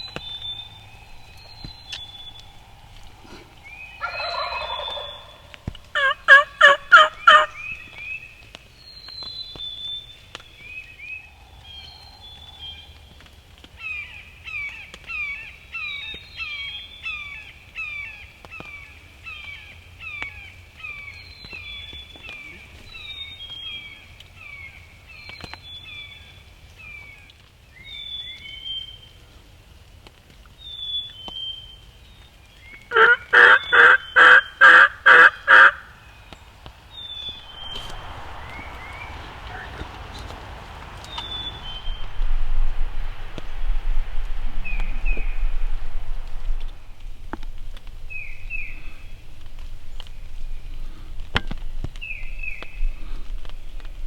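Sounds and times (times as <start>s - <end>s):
songbirds chirping: 0.0s - 54.0s
turkey gobbling: 1.3s - 8.1s, 32.9s - 36.0s
turkey yelping: 4.0s - 7.9s, 32.9s - 35.9s.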